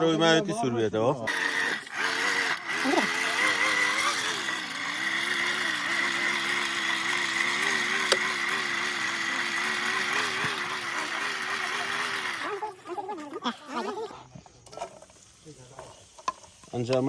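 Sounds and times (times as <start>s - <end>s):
engine humming: 1.3s - 14.1s.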